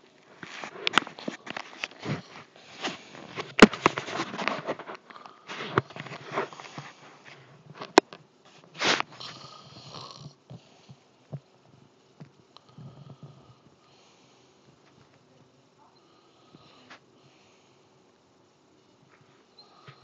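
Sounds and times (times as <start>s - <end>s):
snoring: 9.1s - 11.0s, 12.6s - 14.3s, 16.0s - 17.6s.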